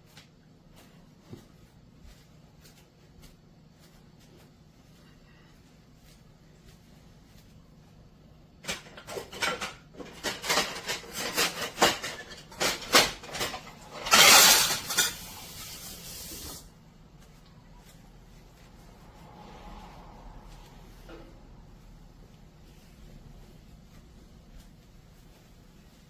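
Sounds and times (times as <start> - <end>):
moka pot hissing: 15.0 - 16.7.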